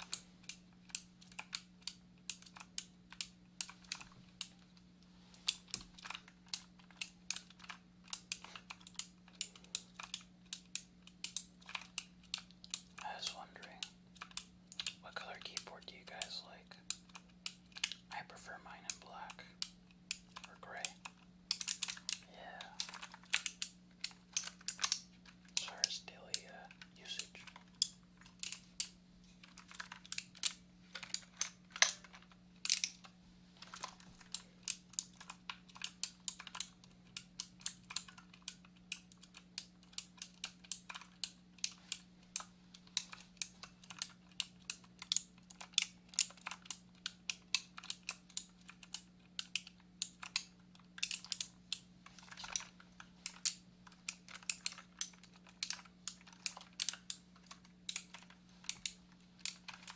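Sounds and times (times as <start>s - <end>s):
computer keyboard typing: 0.0s - 4.6s, 5.4s - 59.9s
steady low hum: 0.0s - 59.9s.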